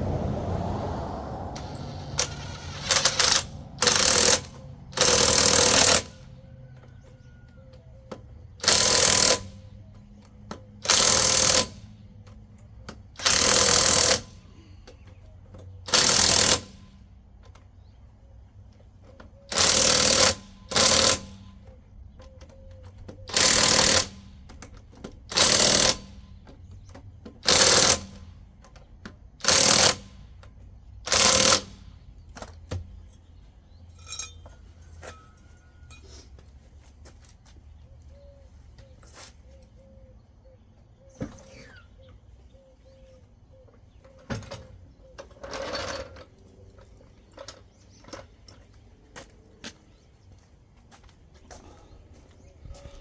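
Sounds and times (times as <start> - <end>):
impact wrench hammering: 1.7 - 6.2.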